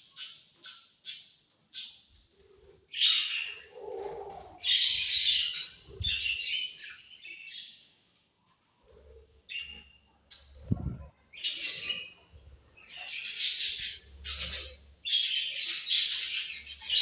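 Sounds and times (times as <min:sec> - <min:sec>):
budgerigars chirping and squawking: 0:02.9 - 0:03.8, 0:04.6 - 0:07.1, 0:11.3 - 0:12.2, 0:12.8 - 0:17.0.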